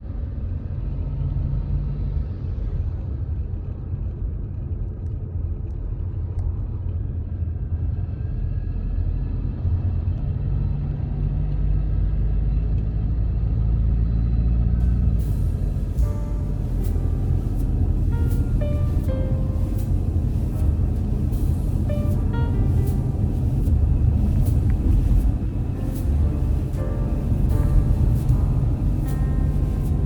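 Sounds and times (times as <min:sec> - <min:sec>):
road and engine rumble: 0:00.8 - 0:30.0
faint steady tones: 0:14.8 - 0:30.0.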